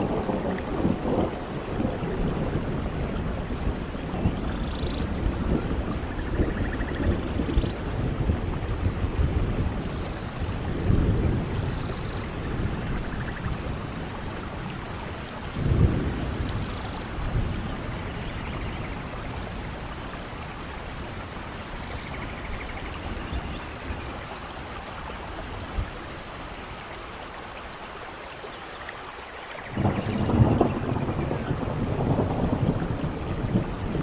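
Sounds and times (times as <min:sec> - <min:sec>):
low rolls of thunder: 0:00.0 - 0:24.2, 0:29.6 - 0:34.0
steady rain falling: 0:00.0 - 0:34.0.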